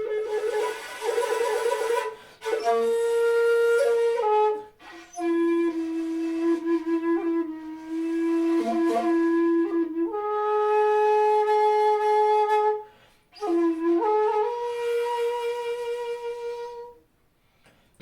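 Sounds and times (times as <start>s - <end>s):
bamboo flute long held notes: 0.0s - 17.0s.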